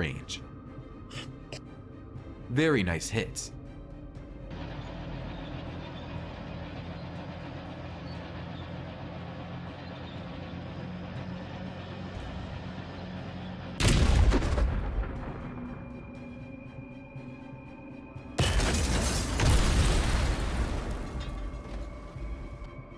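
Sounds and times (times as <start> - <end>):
background music: 0.0 - 22.9
loud explosion blast: 13.8 - 15.8.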